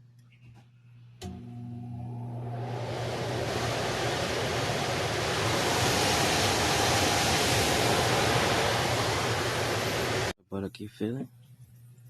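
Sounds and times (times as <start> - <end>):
low steady hum: 0.0 - 12.0
water rushing from pump: 2.4 - 10.4.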